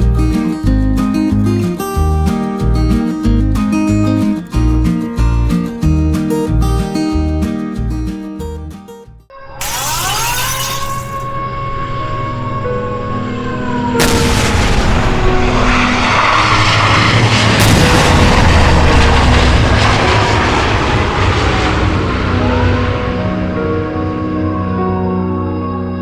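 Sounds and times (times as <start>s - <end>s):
air-raid siren wailing: 9.3s - 26.0s
loud noisy rumble: 11.3s - 25.0s.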